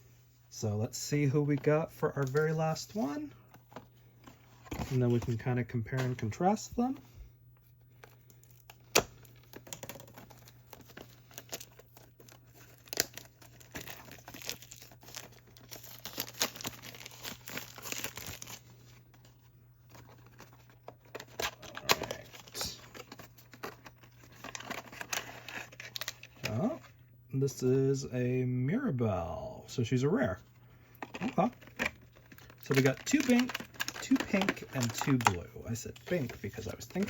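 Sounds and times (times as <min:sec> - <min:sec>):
packaging tearing and crinkling: 0:08.2 - 0:18.9, 0:20.0 - 0:26.6, 0:31.0 - 0:37.0.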